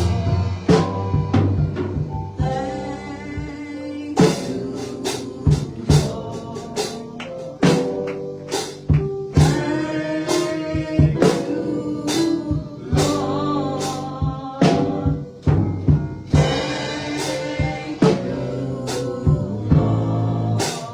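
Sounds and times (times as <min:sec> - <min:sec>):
live gospel band music: 0:00.0 - 0:20.9
sharp accented drum strikes: 0:04.2 - 0:12.4, 0:14.6 - 0:19.2.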